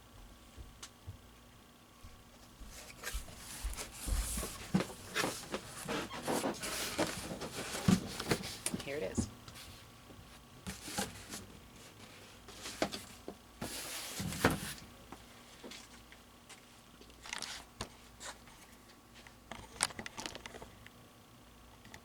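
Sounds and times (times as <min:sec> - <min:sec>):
cardboard box rustling and scraping: 0:02.8 - 0:09.1, 0:10.7 - 0:14.8.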